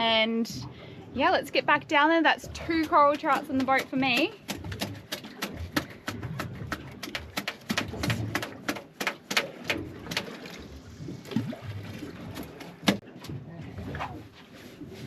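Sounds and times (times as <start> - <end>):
sharp irregular clicks and knocks: 2.5 - 10.4.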